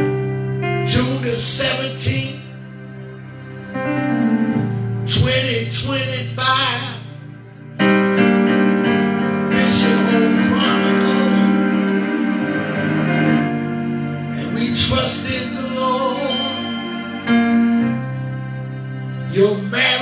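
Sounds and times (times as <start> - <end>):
electric keyboard gospel chords: 0.0 - 20.0
person preaching: 0.8 - 2.6, 5.1 - 7.3, 9.5 - 11.7, 14.4 - 16.9, 19.3 - 20.0.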